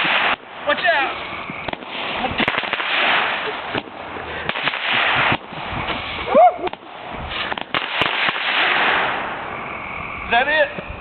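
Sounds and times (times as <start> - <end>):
fireworks hissing spray: 0.0 - 9.6
fireworks crackles and pops: 0.0 - 11.0
short cry: 6.2 - 6.7.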